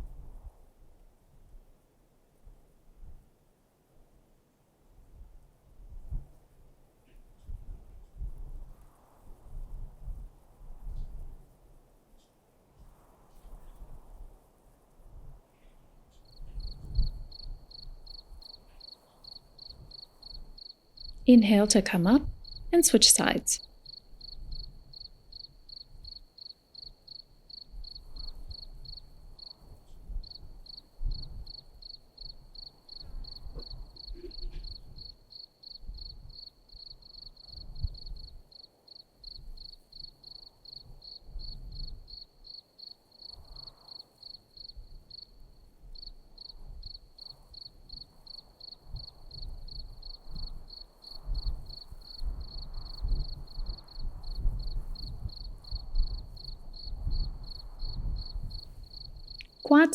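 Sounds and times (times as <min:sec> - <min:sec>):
cricket chirping: 0:16.2 - 0:59.8.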